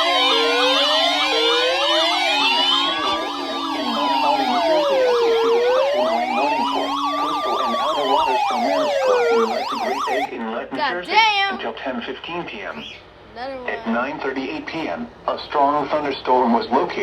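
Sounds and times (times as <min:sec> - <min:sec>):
steady low tone: 0:00.0 - 0:10.0
siren wailing: 0:00.0 - 0:10.3
siren yelps: 0:00.0 - 0:10.3.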